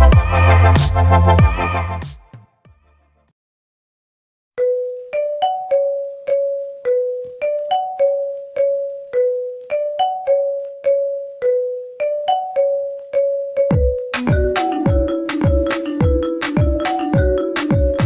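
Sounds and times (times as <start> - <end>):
ringtone melody: 4.6 - 18.0.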